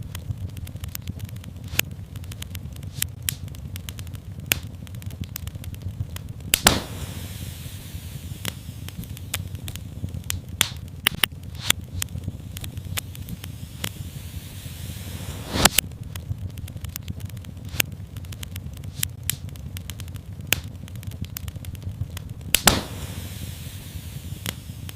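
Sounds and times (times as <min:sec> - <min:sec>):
fire pops and snaps: 0:00.0 - 0:24.9
wood fire crackling: 0:00.0 - 0:24.9
short hiss: 0:06.6 - 0:09.5, 0:12.6 - 0:15.8, 0:22.6 - 0:24.9.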